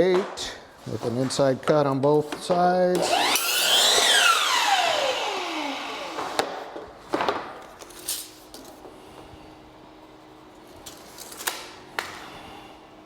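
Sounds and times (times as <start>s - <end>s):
miter saw motor whine: 3.0s - 6.4s.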